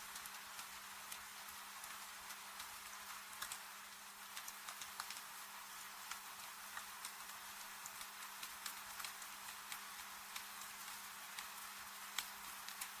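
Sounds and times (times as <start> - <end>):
rain hissing: 0.0 - 13.0
wood fire crackling and popping: 0.1 - 13.0.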